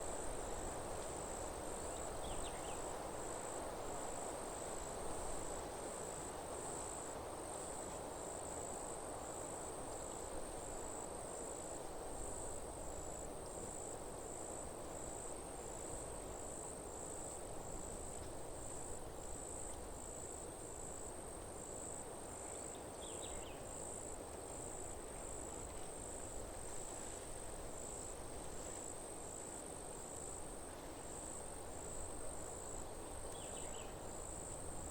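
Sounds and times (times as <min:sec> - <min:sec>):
insects chirping: 0:00.0 - 0:03.4, 0:12.2 - 0:34.9.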